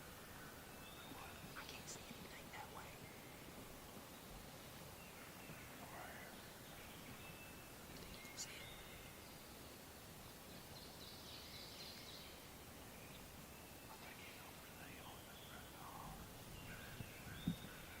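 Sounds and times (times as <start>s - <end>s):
faint distant birdsong: 0.0s - 18.0s.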